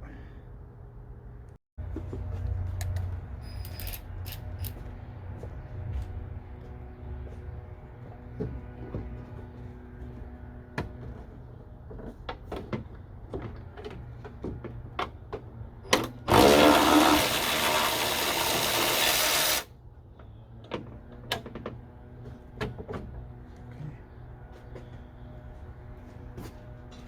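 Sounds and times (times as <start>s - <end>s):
power tool running: 16.2s - 19.7s.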